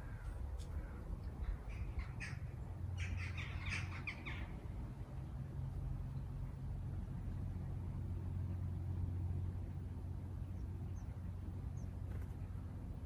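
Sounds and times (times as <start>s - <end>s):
birds calling: 0.0s - 4.6s
steady low rumble: 0.0s - 13.0s.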